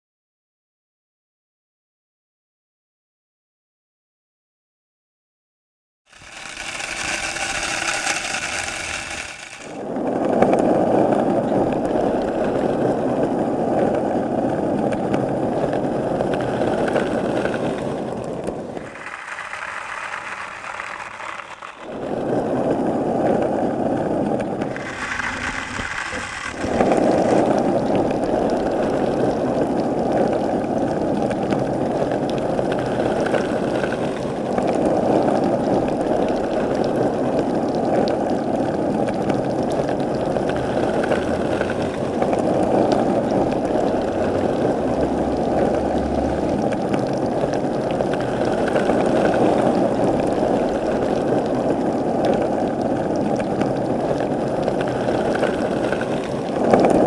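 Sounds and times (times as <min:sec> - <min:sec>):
outdoor ambience: 0:06.1 - 0:32.9
skateboard wheels rolling on pavement: 0:06.1 - 0:57.0.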